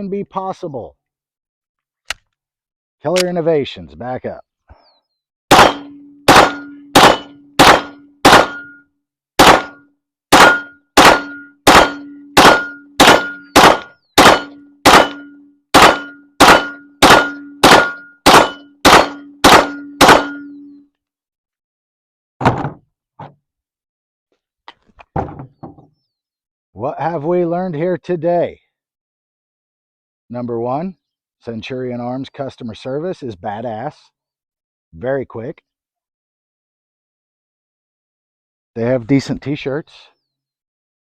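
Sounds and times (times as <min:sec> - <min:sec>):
pistol shots: 0:05.5 - 0:08.8, 0:09.4 - 0:20.6
steel target ringing: 0:05.5 - 0:08.8, 0:09.4 - 0:20.8.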